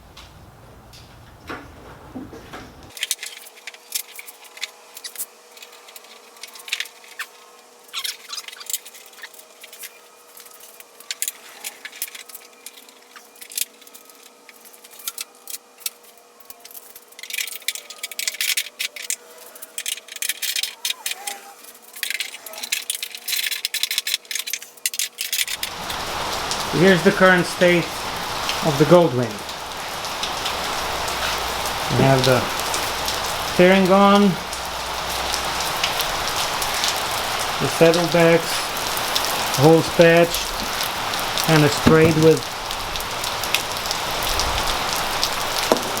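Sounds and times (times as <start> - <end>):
sharp handling clicks and clatter: 2.4 - 25.7
faint steady hum: 25.5 - 46.0.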